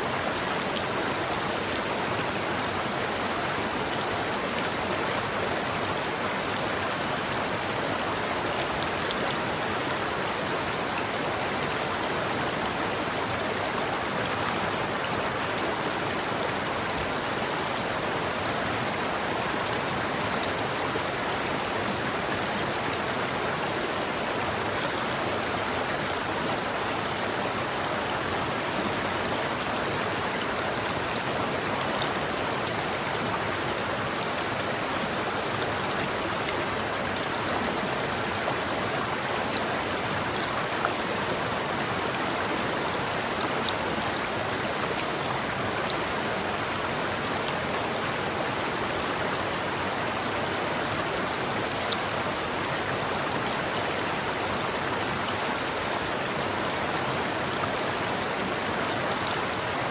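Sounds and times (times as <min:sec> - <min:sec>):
river flowing over rocks: 0:00.0 - 0:59.9.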